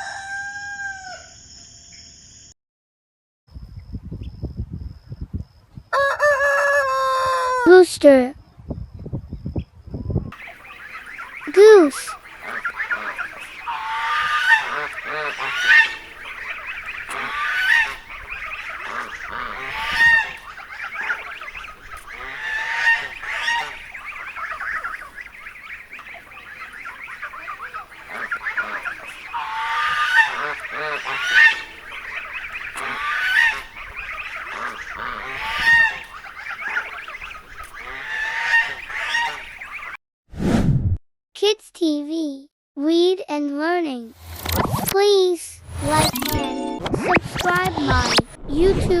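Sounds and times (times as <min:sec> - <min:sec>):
geese honking: 0:10.4 - 0:40.0.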